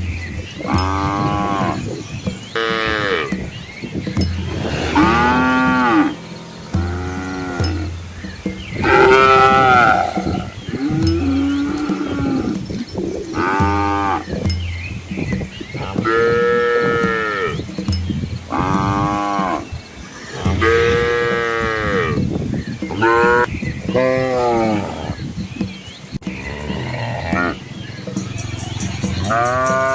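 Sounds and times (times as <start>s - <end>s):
cattle mooing: 4.4s - 7.9s, 18.6s - 22.2s, 26.4s - 29.9s.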